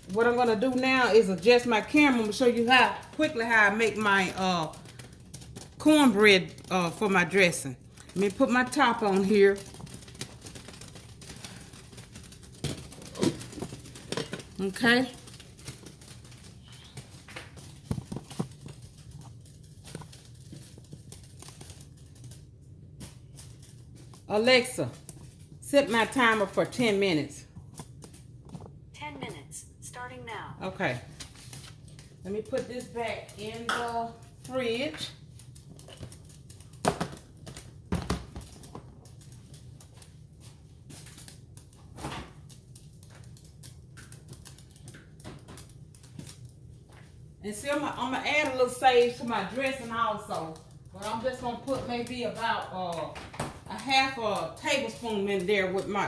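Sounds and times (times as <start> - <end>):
objects knocking in kitchen: 37.8 - 38.6.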